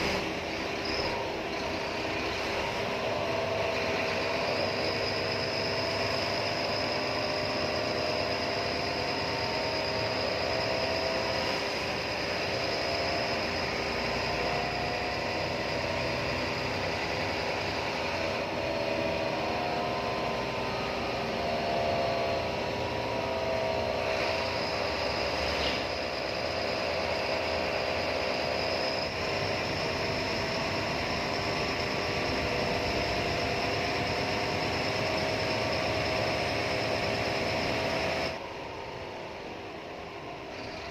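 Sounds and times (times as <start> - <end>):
bus engine and road noise: 0.0 - 40.9
engine whine: 0.0 - 40.9.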